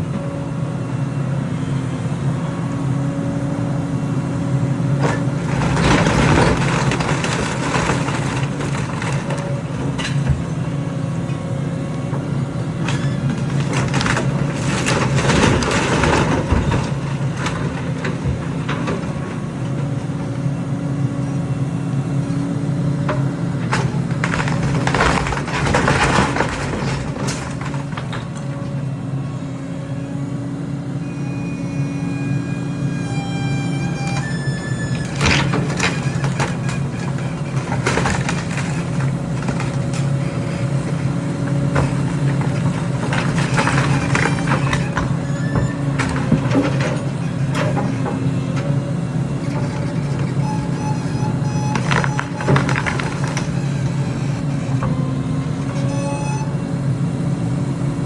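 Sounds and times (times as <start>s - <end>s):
heavy machine engine humming: 0.0s - 58.0s.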